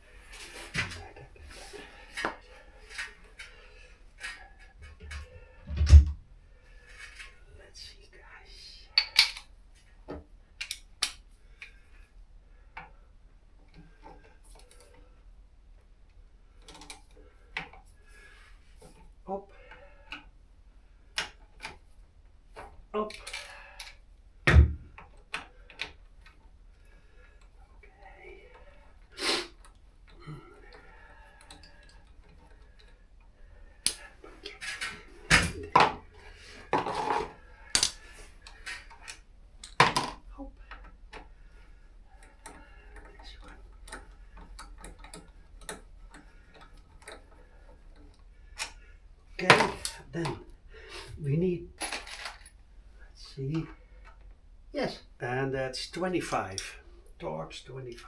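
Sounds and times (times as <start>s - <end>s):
metallic clicks of hand tools: 9.0s - 9.5s, 10.6s - 11.7s, 37.7s - 39.8s
metal tools clanking and scraping: 33.8s - 40.1s.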